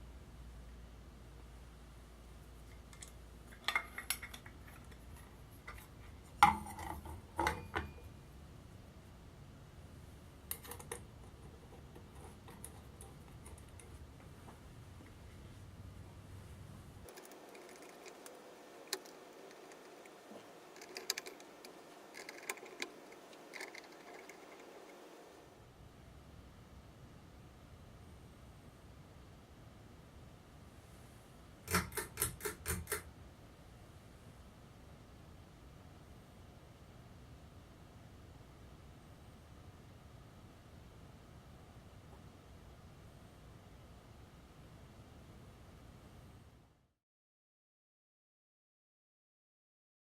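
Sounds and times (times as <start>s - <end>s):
hard parts clinking and rattling: 2.8s - 8.0s
small parts clicking: 20.7s - 24.7s.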